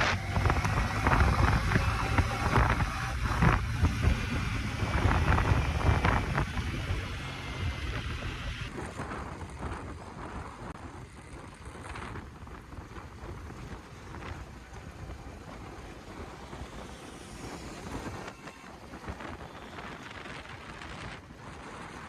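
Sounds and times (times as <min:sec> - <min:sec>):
road and traffic noise: 0:00.0 - 0:22.0
wind buffeting microphone: 0:00.0 - 0:22.0.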